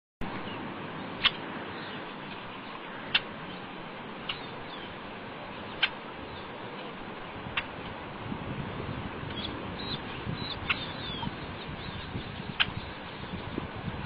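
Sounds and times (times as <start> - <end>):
steady hiss: 0.2 - 14.0
bird chirping: 0.3 - 6.9, 9.3 - 13.5.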